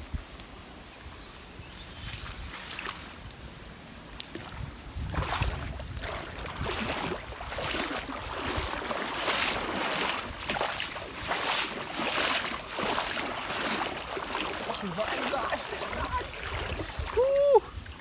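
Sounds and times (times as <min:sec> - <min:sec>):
water sloshing and splashing: 0:04.2 - 0:18.0.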